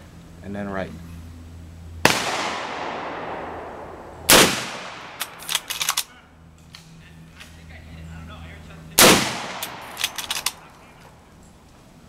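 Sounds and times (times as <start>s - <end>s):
gunshots with echoing tail: 2.0s - 5.5s, 9.0s - 10.2s.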